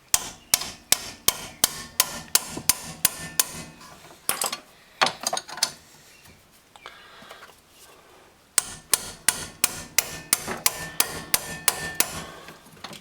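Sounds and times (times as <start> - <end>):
ratchet wrench clicking: 0.0 - 3.7, 8.6 - 12.4.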